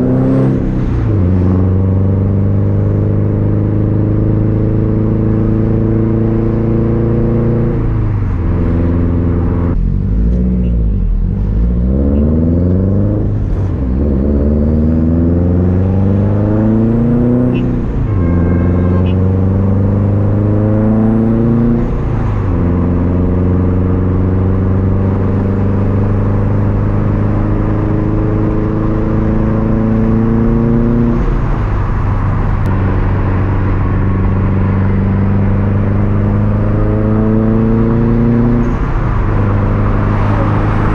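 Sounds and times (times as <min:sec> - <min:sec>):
car engine revving through gears: 0:00.0 - 0:40.9.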